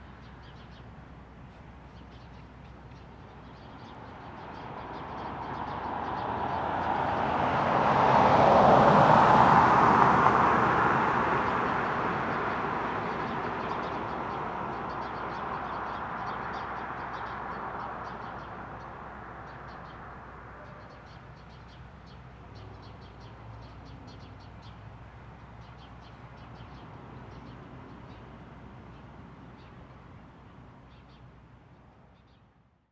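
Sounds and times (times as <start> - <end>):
vehicle passing: 5.2 - 13.5.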